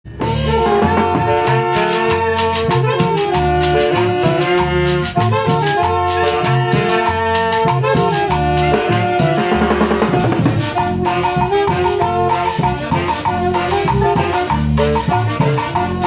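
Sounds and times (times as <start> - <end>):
drums and bass beat: 0.0 - 16.0
brass section chords: 0.1 - 16.0
dance orchestra playing: 0.2 - 3.2, 7.7 - 16.0.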